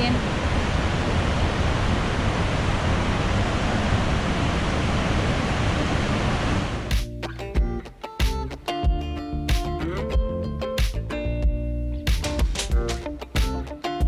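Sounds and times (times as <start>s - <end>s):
waterfall roaring: 0.0s - 6.8s
guitar music: 6.8s - 14.0s.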